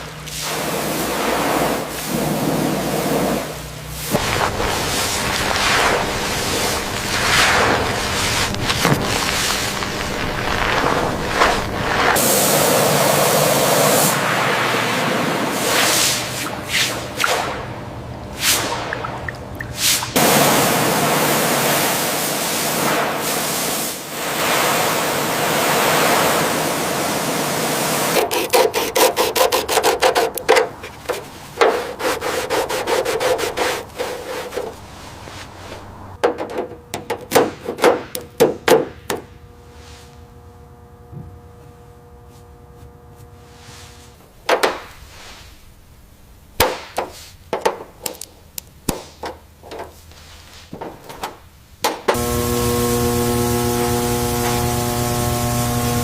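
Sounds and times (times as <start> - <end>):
steady hum: 0.0 - 23.2, 24.0 - 46.6, 50.8 - 56.0
sharp scraping strokes: 4.1 - 12.6, 28.0 - 35.9
abrasive rubbing: 4.1 - 13.1, 28.1 - 36.2.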